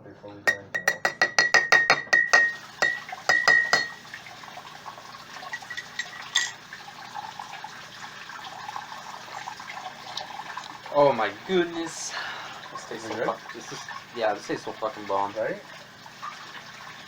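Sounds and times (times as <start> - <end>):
spoon clinking in coffee mug: 0.5 - 4.0, 5.4 - 6.6.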